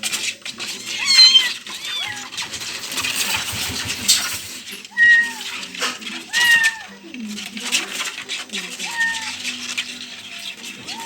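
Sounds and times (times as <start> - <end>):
rustling: 0.0 - 11.0
kittens meowing: 0.8 - 2.4, 4.8 - 7.0, 8.6 - 11.0.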